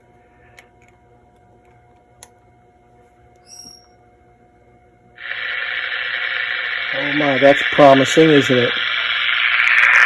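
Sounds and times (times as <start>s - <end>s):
low steady hum: 0.0s - 10.0s
short high chirp: 3.4s - 4.0s.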